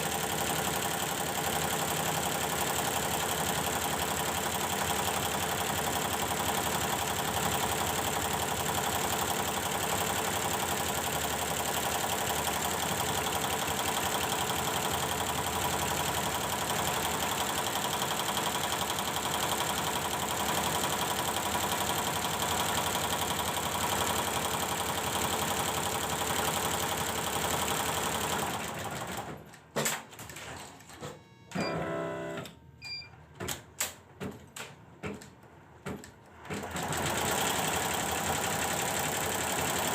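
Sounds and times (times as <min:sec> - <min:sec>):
embroidery machine stitching: 0:00.0 - 0:29.3, 0:36.4 - 0:39.9.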